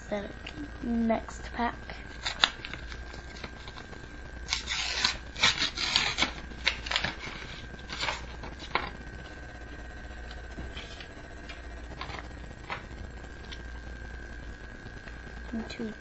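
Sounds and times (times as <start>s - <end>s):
wrapper rustling and tearing: 2.1s - 3.9s, 4.5s - 8.9s
cards tapping and scraping: 4.5s - 9.0s.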